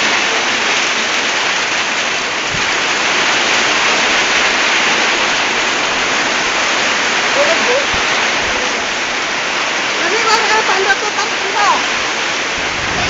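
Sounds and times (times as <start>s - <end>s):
hail and heavy rain: 0.0s - 13.0s.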